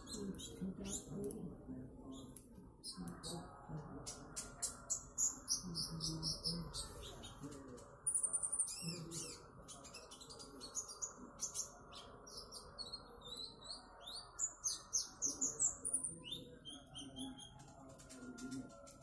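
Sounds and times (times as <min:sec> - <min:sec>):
sunbird singing rapid chirps: 0:04.4 - 0:19.0.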